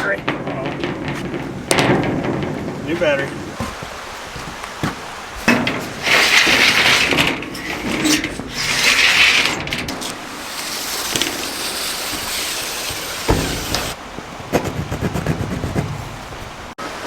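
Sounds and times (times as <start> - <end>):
drill shear cutting metal sheet: 6.0 - 14.0.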